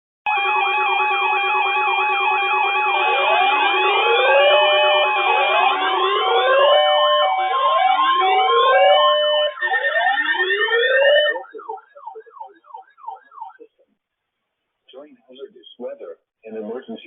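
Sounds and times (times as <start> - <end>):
electronic siren and alert tones: 0.3 - 13.8.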